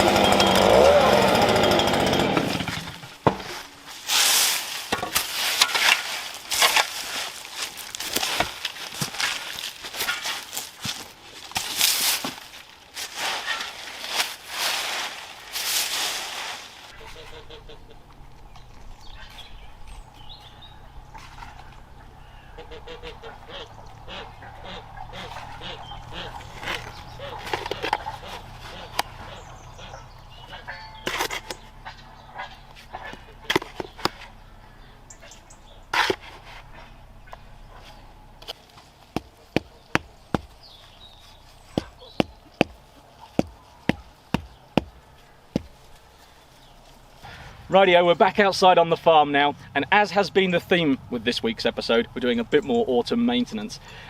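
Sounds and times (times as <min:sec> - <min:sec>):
farm poultry calling: 0:16.9 - 0:38.6.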